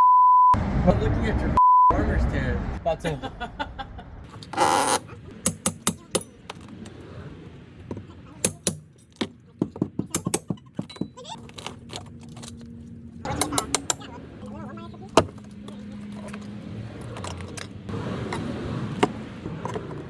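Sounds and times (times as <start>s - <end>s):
sharp clicks and knocks: 5.3s - 6.8s, 8.4s - 11.9s, 13.3s - 14.0s.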